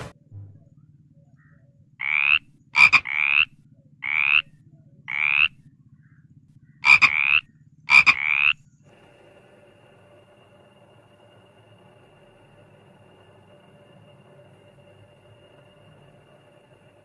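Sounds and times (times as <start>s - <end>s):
frog croaking: 1.4s - 8.6s.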